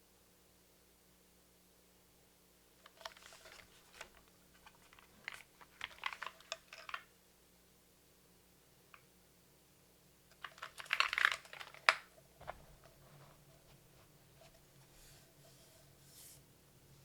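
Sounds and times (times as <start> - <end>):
mechanical keyboard typing: 5.2 - 7.1, 10.4 - 12.1.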